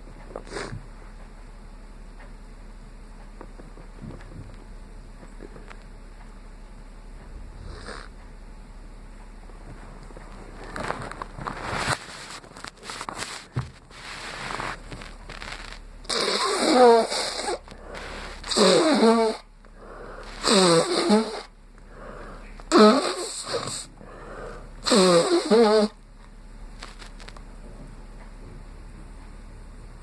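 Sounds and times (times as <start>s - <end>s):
breathy noises: 9.6s - 26.0s
person sneezing: 16.1s - 19.4s.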